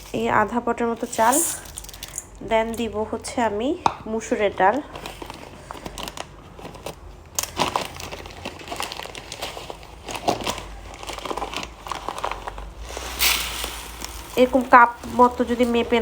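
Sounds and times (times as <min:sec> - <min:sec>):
plastic packet crinkling: 0:01.0 - 0:02.2, 0:04.7 - 0:16.0.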